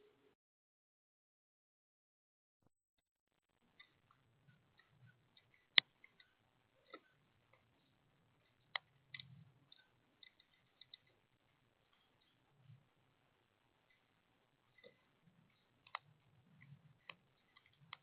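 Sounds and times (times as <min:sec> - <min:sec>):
birds pecking clicks: 0:03.8 - 0:12.9, 0:13.7 - 0:18.0.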